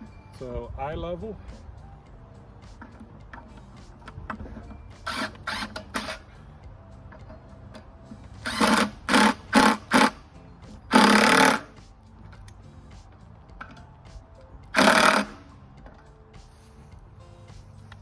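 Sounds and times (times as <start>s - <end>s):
power drill driving screws: 5.0s - 6.3s, 8.4s - 10.2s, 10.9s - 11.8s, 14.8s - 15.4s.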